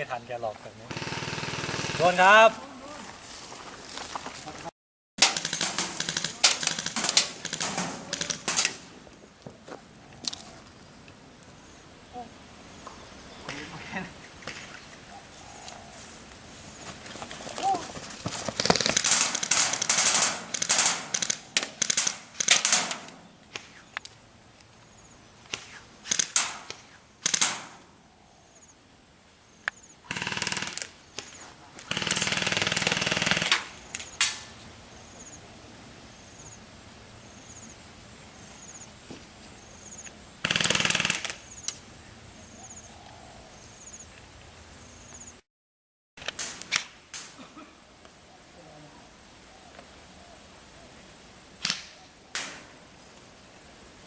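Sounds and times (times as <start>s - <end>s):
airsoft guns firing: 0.9s - 2.5s, 5.2s - 9.0s, 18.6s - 23.8s, 25.5s - 27.9s, 30.1s - 34.5s, 40.4s - 41.5s.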